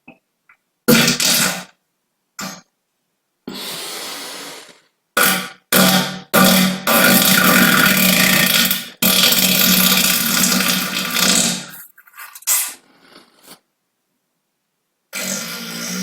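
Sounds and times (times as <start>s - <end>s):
buzzing farts: 0.9s - 1.8s, 5.2s - 11.8s, 15.2s - 16.0s.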